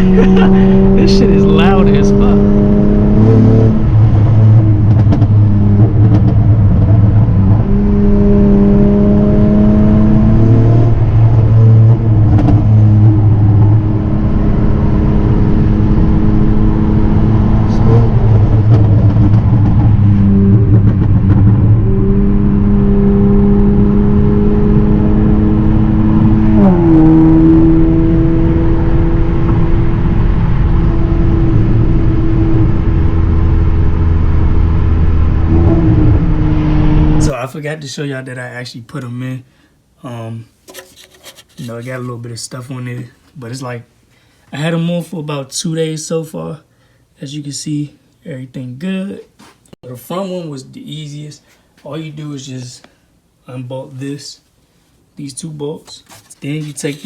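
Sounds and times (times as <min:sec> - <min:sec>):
car engine revving: 0:00.0 - 0:37.3.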